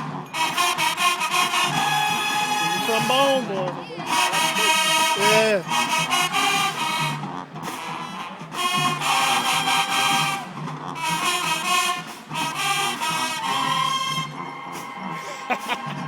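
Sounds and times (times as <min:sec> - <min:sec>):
brass held chords: 0:00.0 - 0:16.0
marching band playing: 0:00.0 - 0:16.0.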